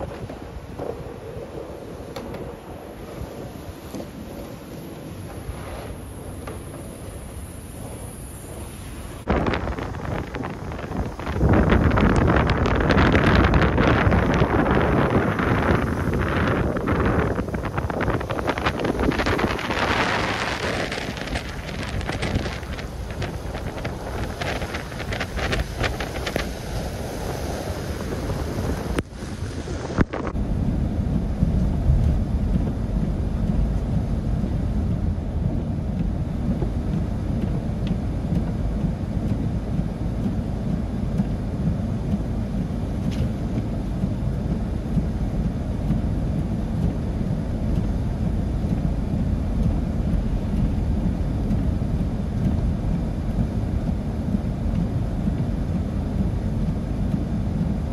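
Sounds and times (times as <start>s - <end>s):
bright hiss: 0.0s - 30.3s
wind buffeting microphone: 0.0s - 57.9s.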